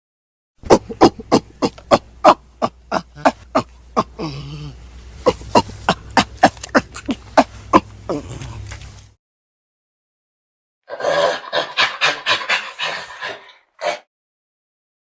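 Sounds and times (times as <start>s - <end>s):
chimpanzee calling: 0.6s - 8.7s.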